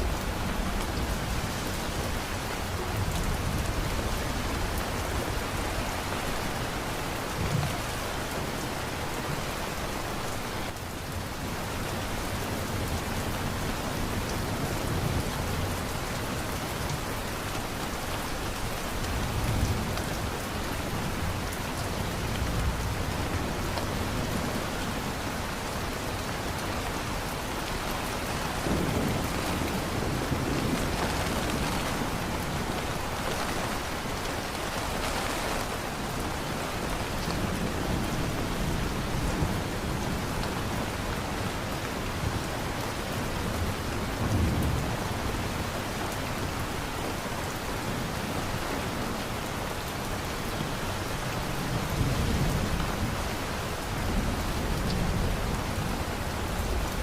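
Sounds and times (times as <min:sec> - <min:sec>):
heavy rain falling: 0:00.0 - 0:57.0
thunder rumbles: 0:27.7 - 0:40.5.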